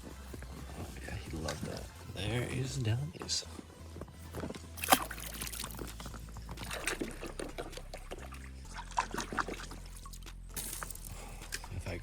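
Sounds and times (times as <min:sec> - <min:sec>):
water splashing and trickling: 0:04.7 - 0:12.0.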